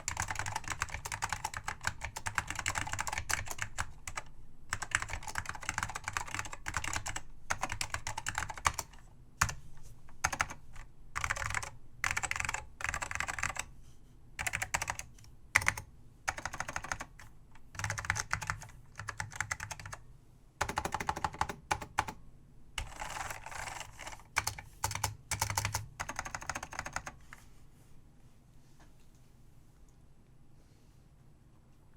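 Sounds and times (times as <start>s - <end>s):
keyboard typing: 0.0s - 9.6s, 10.2s - 13.7s, 14.4s - 20.0s, 20.6s - 22.2s, 22.8s - 27.2s.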